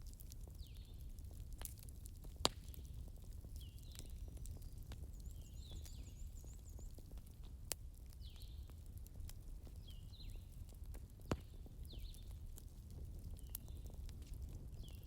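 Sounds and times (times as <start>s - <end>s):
low rumble of fire: 0.0s - 15.0s
sharp pops of fire: 0.0s - 15.0s
wood fire crackling: 0.0s - 15.0s
faint chirping calls: 3.6s - 7.2s.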